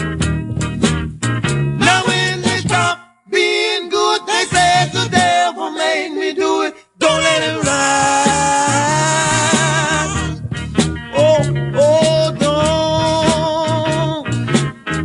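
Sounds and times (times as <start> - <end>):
backing music: 0.0 - 5.7, 7.0 - 15.0
gospel group singing in harmony: 1.8 - 10.4.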